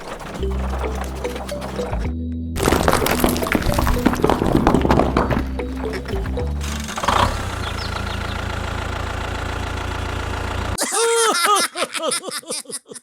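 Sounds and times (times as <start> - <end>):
small engine humming: 6.0 - 10.8
baby laughing: 10.8 - 13.0.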